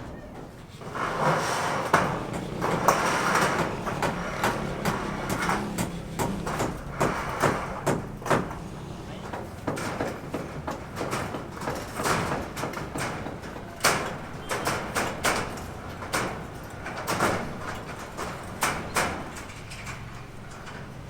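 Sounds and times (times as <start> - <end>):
building work knocks and bangs: 0.3 - 21.0.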